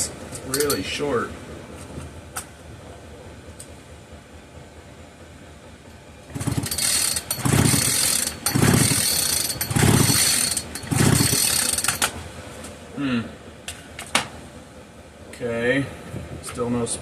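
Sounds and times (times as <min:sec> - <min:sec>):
engine spinning over: 0:06.2 - 0:12.4
chainsaw recoil starter pulls: 0:06.3 - 0:12.2.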